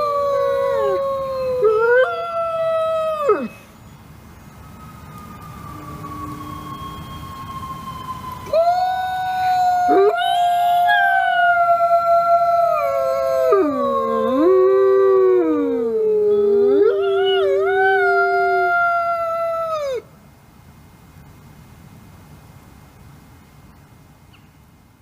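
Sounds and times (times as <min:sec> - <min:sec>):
wolves howling in chorus: 0:12.6 - 0:19.0.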